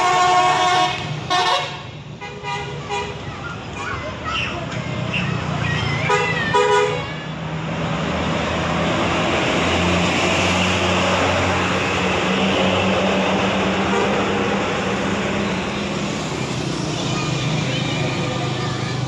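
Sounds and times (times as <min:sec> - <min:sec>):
bus multi-tone horn: 0:00.0 - 0:03.2, 0:06.1 - 0:07.3, 0:13.8 - 0:14.5
road noise: 0:00.0 - 0:19.0.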